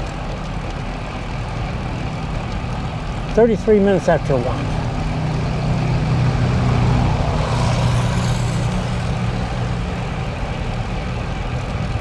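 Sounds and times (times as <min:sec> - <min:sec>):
vehicle engine humming: 0:00.0 - 0:12.0
wind and road noise: 0:00.0 - 0:12.0.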